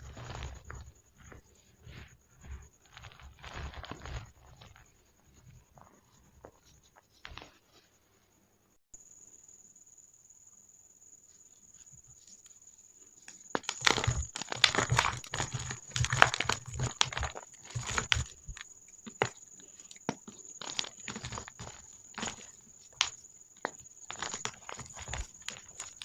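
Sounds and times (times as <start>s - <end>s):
chalk balls crunching: 0.0s - 7.6s, 13.2s - 26.0s.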